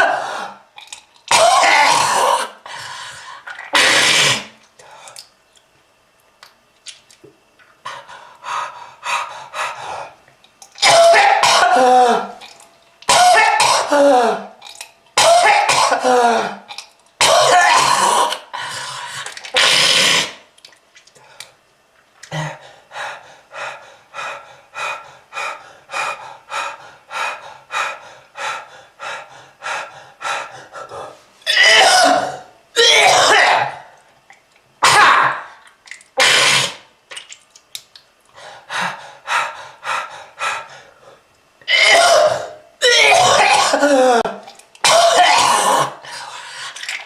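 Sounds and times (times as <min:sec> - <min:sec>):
person coughing hard: 0:01.3 - 0:02.5, 0:10.8 - 0:12.4, 0:13.1 - 0:14.5, 0:15.2 - 0:16.6, 0:17.2 - 0:18.4, 0:31.5 - 0:33.9, 0:34.8 - 0:35.5, 0:41.7 - 0:46.0.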